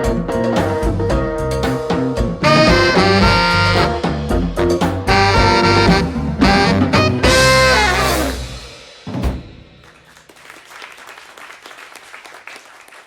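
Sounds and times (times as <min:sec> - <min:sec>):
drum and cymbal hit: 0:00.0 - 0:09.9
light applause: 0:09.8 - 0:13.0.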